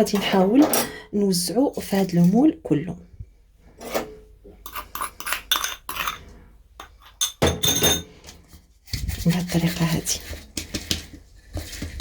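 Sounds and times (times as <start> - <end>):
scrapes and knocks against pan: 3.8 - 12.0.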